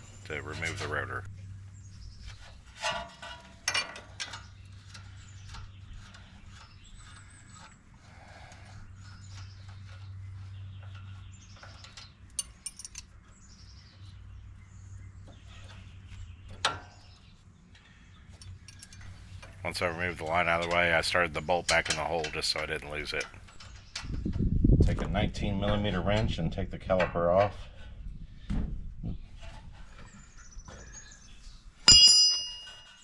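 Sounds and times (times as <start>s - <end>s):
faint birdsong: 0.0s - 2.6s, 4.3s - 12.3s, 13.2s - 24.0s, 29.9s - 31.8s
metal tool clicks and clinks: 12.4s - 13.0s.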